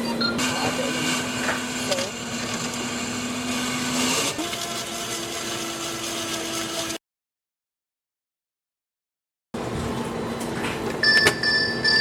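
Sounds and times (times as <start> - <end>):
smoothie machine blending: 0.0 - 7.0.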